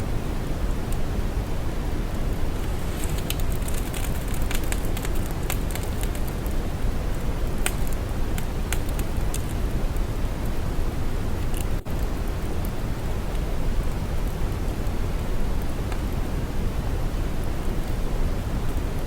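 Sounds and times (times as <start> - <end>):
soft crackles: 2.2 - 10.6.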